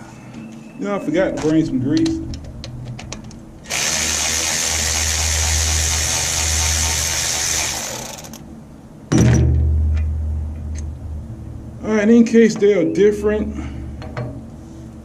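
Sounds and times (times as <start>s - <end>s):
cordless power tool running: 3.6s - 8.4s.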